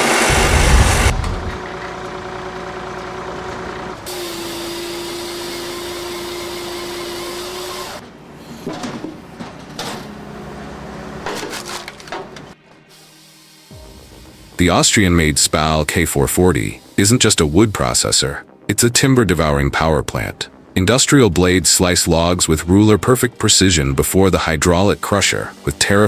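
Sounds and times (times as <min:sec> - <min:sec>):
heavy machinery engine whine: 0:00.0 - 0:12.6.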